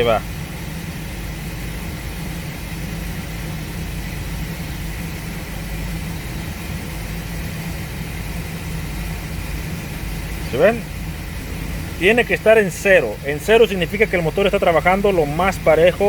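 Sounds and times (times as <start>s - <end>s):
misfiring van engine idling: 0.0s - 16.0s.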